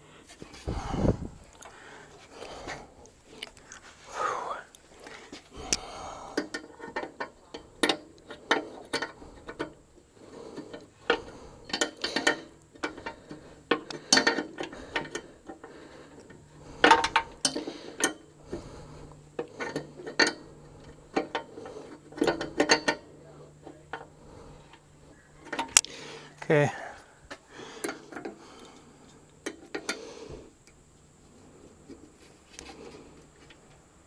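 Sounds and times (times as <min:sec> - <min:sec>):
hand tools clicking on metal: 0:04.7 - 0:09.8, 0:10.5 - 0:18.6.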